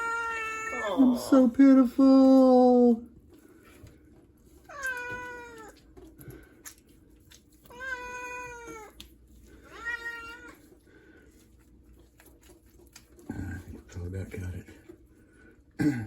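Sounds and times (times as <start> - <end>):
cat meowing: 0.0 - 1.3, 4.7 - 5.8, 7.6 - 9.0, 9.6 - 10.7.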